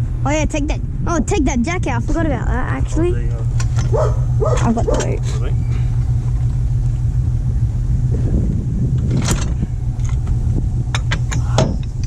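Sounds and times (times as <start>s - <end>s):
car engine running: 0.0s - 12.0s
sharp knocks and rattles: 3.5s - 5.2s, 8.9s - 12.0s.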